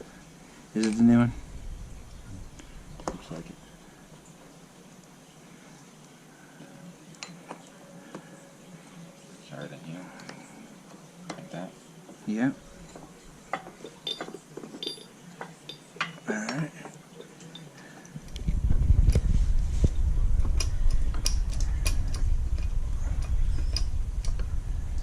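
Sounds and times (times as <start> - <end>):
steady low rumble: 1.0 - 4.1, 18.2 - 25.0
small metallic clinks: 12.8 - 18.4.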